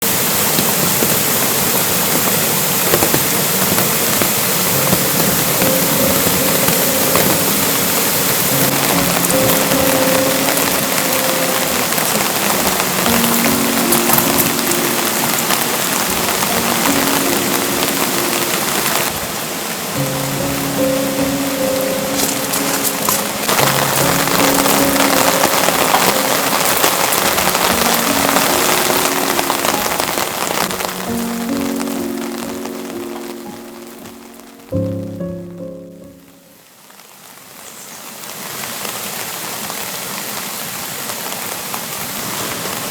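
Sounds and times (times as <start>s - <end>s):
rain pattering: 0.0s - 42.9s
soft music chord: 4.6s - 36.7s.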